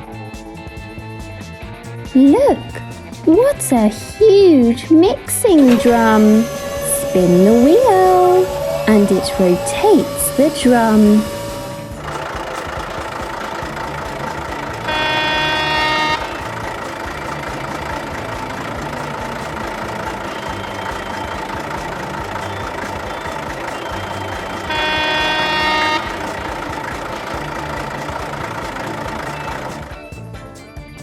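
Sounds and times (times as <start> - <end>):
truck engine running: 0.8 - 30.5
truck horn honks: 2.2 - 12.0, 14.7 - 16.8, 23.9 - 27.4.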